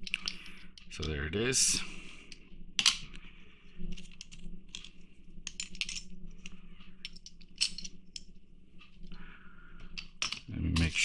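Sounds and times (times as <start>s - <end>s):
faint steady hum: 0.0s - 11.0s
toy car parts clicking and clinking: 2.8s - 3.0s, 4.0s - 8.3s, 9.9s - 11.0s.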